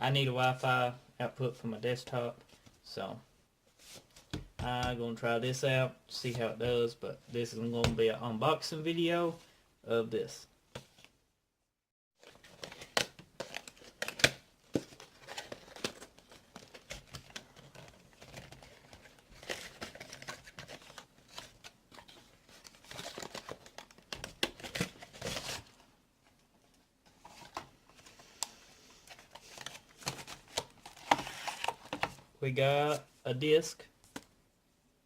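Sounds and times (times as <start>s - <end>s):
plastic packaging crinkling and tearing: 15.0s - 25.8s.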